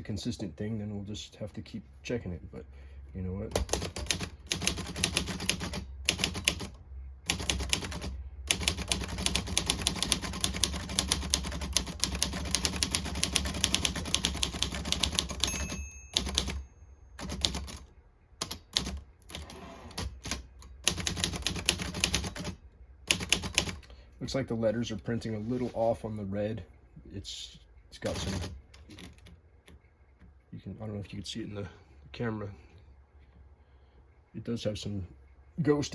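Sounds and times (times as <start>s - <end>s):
typewriter typing: 3.5s - 16.6s, 17.2s - 23.8s, 28.0s - 29.3s
typewriter margin bell: 13.6s - 17.8s.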